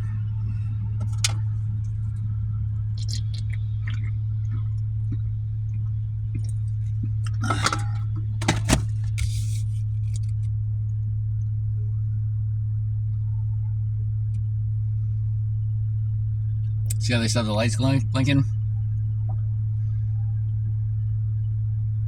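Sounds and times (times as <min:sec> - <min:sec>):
car idling: 0:00.0 - 0:10.4.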